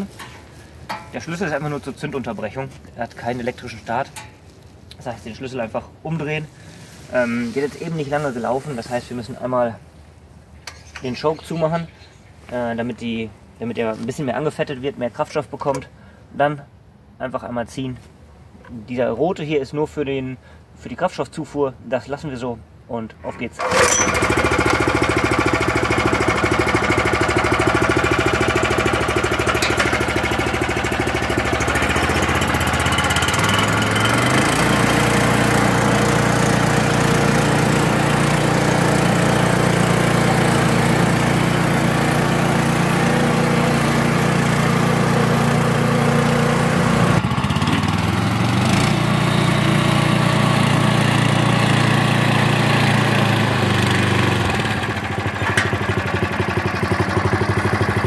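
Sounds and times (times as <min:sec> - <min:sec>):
small petrol engine running: 0:23.6 - 0:58.0.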